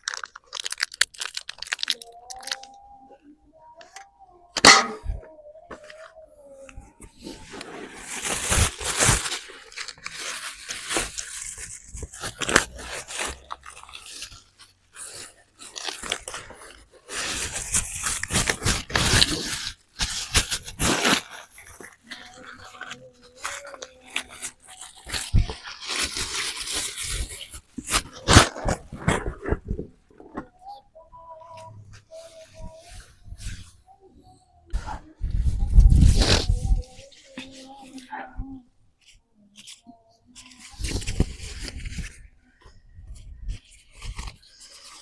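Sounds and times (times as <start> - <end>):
crunching and chewing crisp food: 0.0 - 2.7, 8.7 - 17.1.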